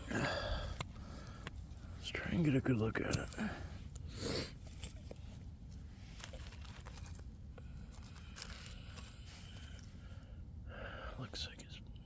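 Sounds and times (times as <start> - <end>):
steady low rumble: 0.0 - 12.0
rustling and crinkling: 2.9 - 10.1.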